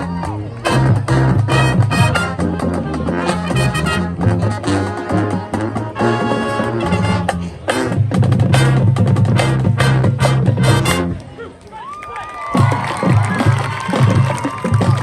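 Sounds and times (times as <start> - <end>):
marching band brass chords: 0.0 - 11.4, 12.5 - 15.0
steady drum beat: 6.8 - 11.0, 12.6 - 15.0.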